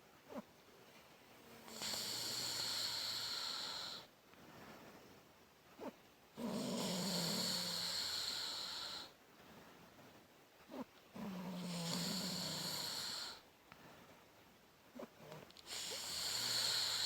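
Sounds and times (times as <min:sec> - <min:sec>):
quiet breathing: 0:00.0 - 0:17.0
woman snoring: 0:01.6 - 0:04.1, 0:06.4 - 0:09.1, 0:11.2 - 0:13.4, 0:15.2 - 0:17.0.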